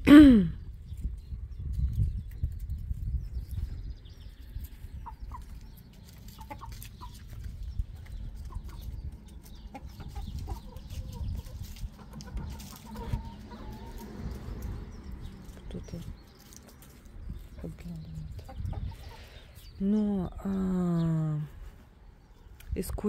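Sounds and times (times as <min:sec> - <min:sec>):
steady low rumble: 0:00.0 - 0:23.0
chickens clucking: 0:01.9 - 0:19.9.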